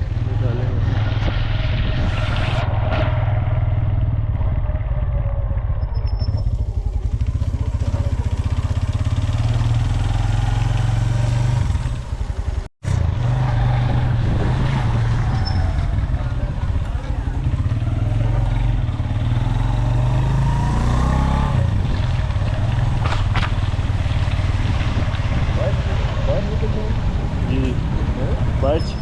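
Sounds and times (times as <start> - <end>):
motorcycle engine rumbling: 0.0 - 29.0.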